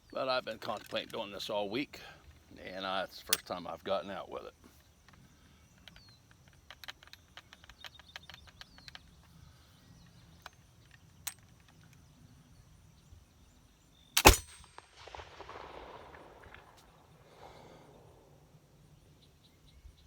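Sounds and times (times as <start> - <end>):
pistol gunshot: 14.2 - 17.0.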